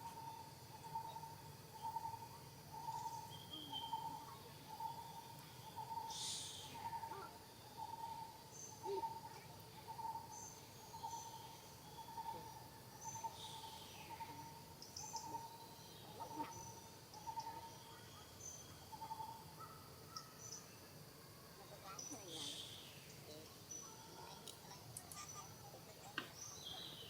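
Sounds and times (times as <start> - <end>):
faint high bird chirps: 0.0 - 20.9, 21.6 - 27.0
outdoor background hiss: 0.0 - 27.0.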